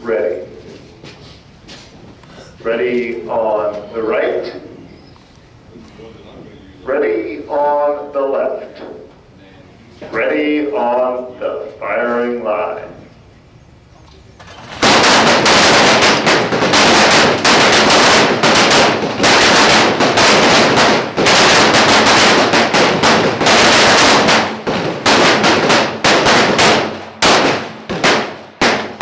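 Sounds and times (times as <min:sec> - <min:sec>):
pistol shots: 0:14.5 - 0:29.0.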